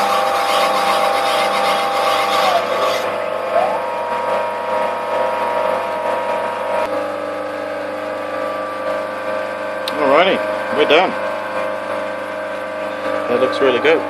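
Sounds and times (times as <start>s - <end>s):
stepper motors whining: 0.0s - 6.9s.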